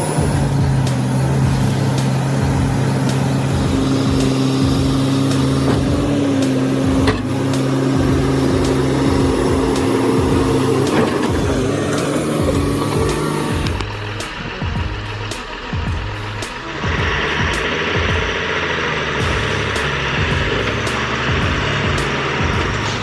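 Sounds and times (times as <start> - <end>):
heavy diesel engine running: 0.0 - 23.0.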